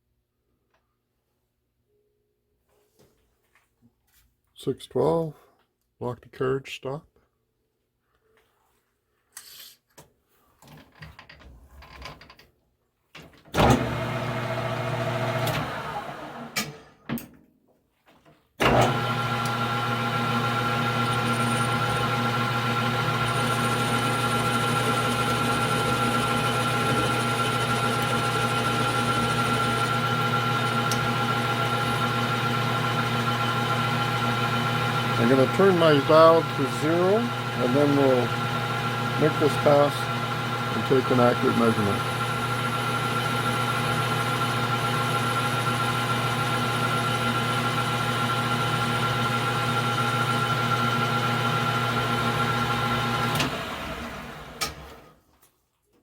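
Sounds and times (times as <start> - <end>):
lathe motor humming: 13.6 - 16.6, 18.7 - 54.8
gear whine: 23.1 - 32.0
lathe handling clicks: 30.9 - 31.1.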